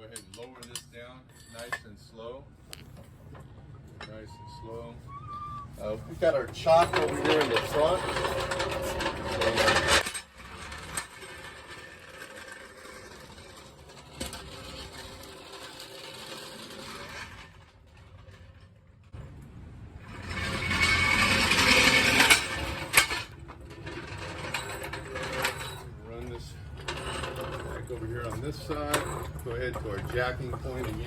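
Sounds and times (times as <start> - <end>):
floor jack clanking and rattling: 6.5 - 19.2, 20.0 - 31.0.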